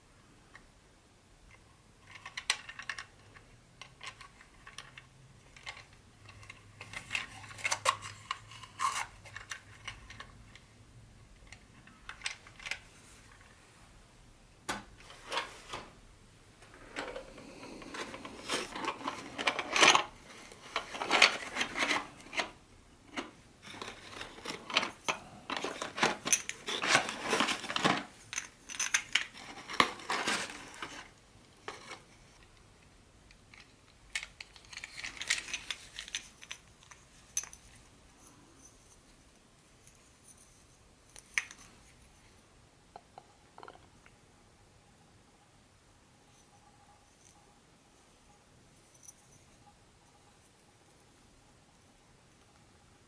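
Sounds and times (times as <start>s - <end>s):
packaging rustling: 16.6s - 22.5s, 23.6s - 28.2s, 29.4s - 31.2s.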